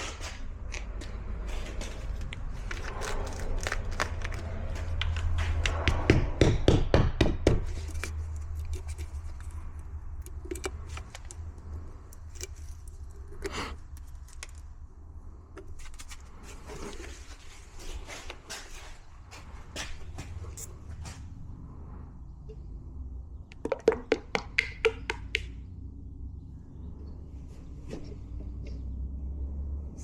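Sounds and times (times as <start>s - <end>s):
small hard items clicking and rattling: 1.8s - 5.8s, 7.6s - 14.8s.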